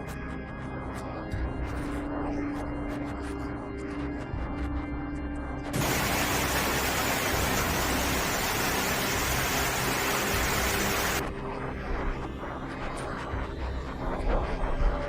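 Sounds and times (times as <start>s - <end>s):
loud rushing noise: 5.8s - 11.2s
steady low tones: 5.8s - 11.2s.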